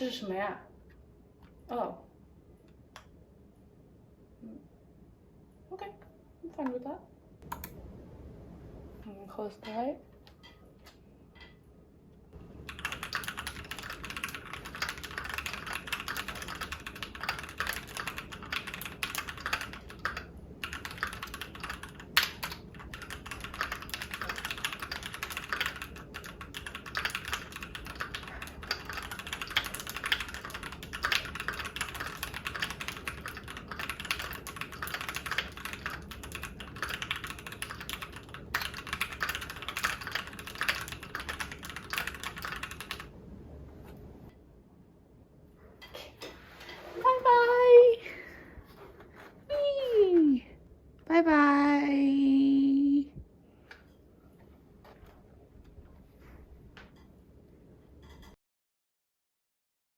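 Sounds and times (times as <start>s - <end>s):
mechanical keyboard typing: 7.5s - 7.8s, 12.6s - 43.1s.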